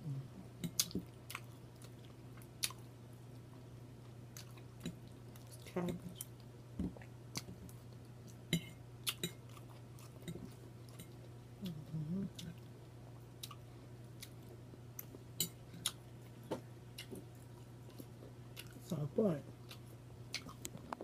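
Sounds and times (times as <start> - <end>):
low electrical hum: 0.0 - 21.0
person chewing food: 0.4 - 21.0
person humming mm-hmm: 11.6 - 12.6.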